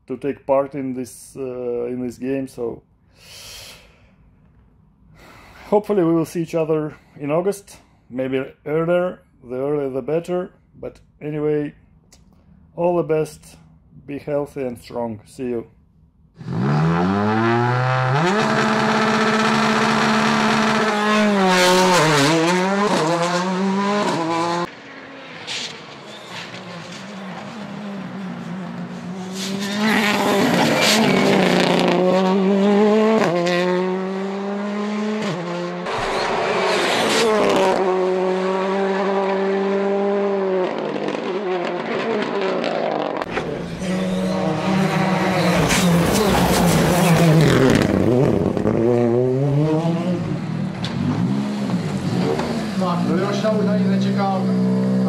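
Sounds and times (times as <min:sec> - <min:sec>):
rally car engine revving: 0:16.4 - 0:55.0.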